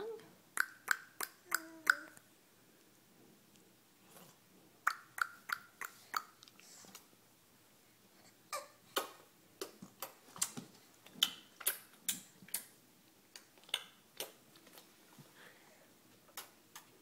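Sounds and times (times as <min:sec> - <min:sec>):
tongue clicks: 0:00.6 - 0:02.2, 0:04.8 - 0:06.6, 0:13.3 - 0:14.4.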